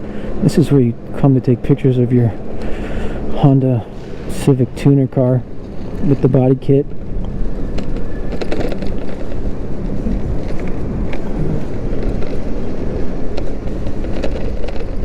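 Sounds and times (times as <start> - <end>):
road rumble: 0.0 - 15.0
wind rush: 2.0 - 15.0
faint clicks and rattles: 7.2 - 15.0.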